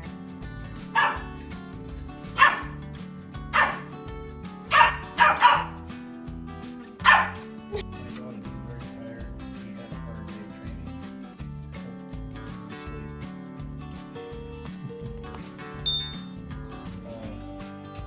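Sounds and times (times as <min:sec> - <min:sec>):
background music: 0:00.0 - 0:18.0
dog barking: 0:00.9 - 0:01.3, 0:02.3 - 0:02.8, 0:03.5 - 0:03.9, 0:04.7 - 0:05.8, 0:07.0 - 0:07.5.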